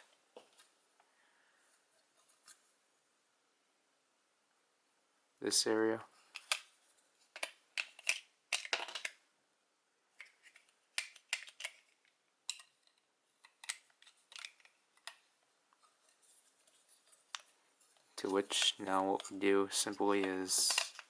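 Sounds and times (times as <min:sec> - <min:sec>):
plastic toy parts clicking: 0:06.3 - 0:06.7, 0:07.3 - 0:09.2, 0:10.2 - 0:11.9, 0:12.5 - 0:15.2, 0:20.2 - 0:21.0.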